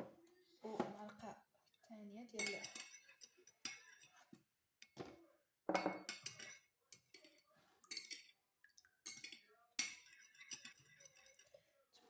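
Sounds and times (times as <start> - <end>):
metal spoon clinking against dish: 2.4 - 5.0, 5.7 - 11.7.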